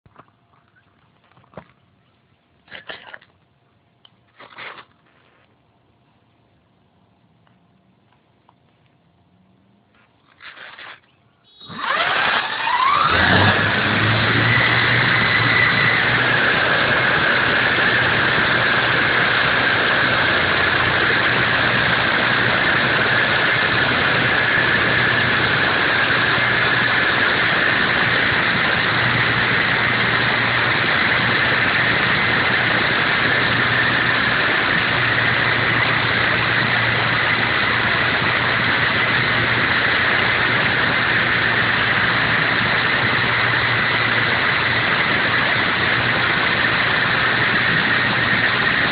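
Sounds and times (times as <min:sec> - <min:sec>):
rc helicopter motor whine: 0:10.4 - 0:48.9
rotor wash hiss: 0:11.5 - 0:48.9.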